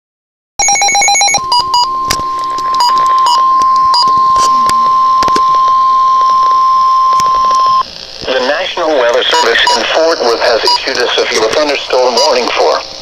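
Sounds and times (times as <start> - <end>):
short beeps: 0.6 - 8.6, 9.3 - 10.0
steady high alarm tone: 0.6 - 11.0
radio static crackles: 1.2 - 13.0.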